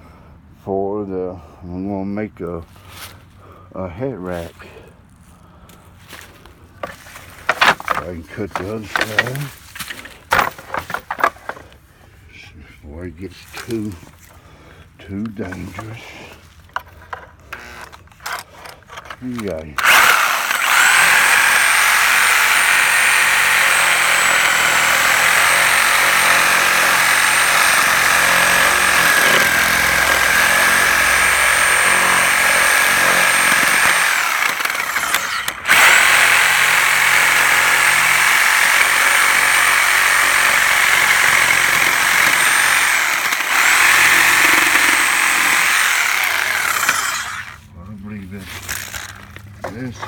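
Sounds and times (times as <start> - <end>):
power tool cutting wood: 6.8 - 11.3, 17.5 - 18.4, 19.4 - 47.6, 48.6 - 50.0.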